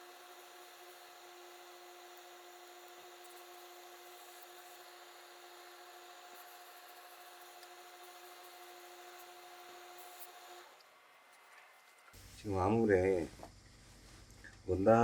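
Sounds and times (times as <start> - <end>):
faint electrical hum: 5.5 - 15.0.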